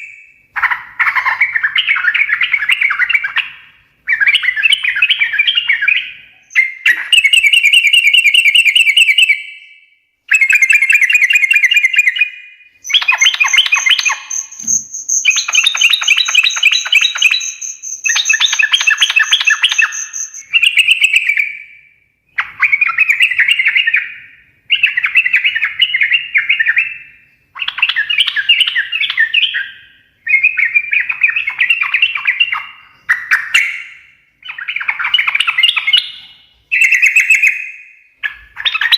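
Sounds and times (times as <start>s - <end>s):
bulbul singing: 4.1s - 9.7s, 10.3s - 21.7s.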